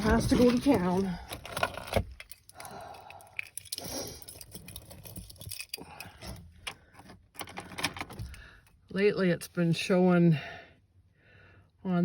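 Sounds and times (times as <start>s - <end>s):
rustling of handled objects: 0.0s - 8.7s.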